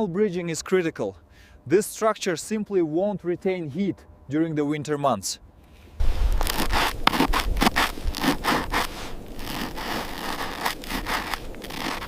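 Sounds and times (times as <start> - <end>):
crunching and scraping: 6.0 - 12.0
low rumble: 6.0 - 12.0.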